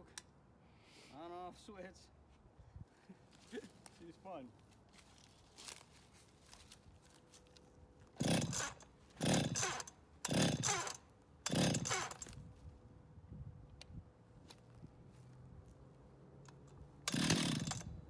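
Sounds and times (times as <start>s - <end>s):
chainsaw engine turning over: 8.2s - 12.4s, 17.1s - 18.0s
chainsaw starter rope pulls: 8.2s - 12.4s, 17.1s - 18.0s.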